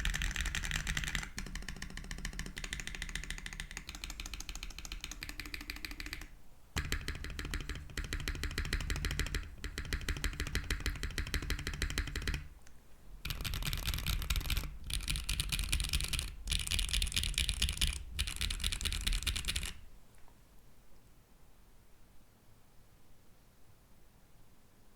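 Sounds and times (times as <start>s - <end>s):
fast keyboard typing: 0.0s - 12.6s, 13.2s - 19.8s.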